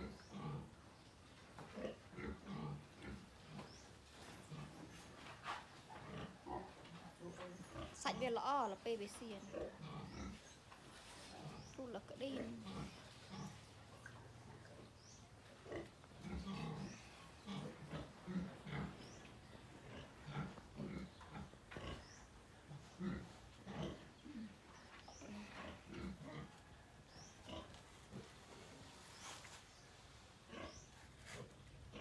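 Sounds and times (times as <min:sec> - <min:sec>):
piglets grunting: 0:09.4 - 0:10.4, 0:11.4 - 0:14.9, 0:15.6 - 0:28.3.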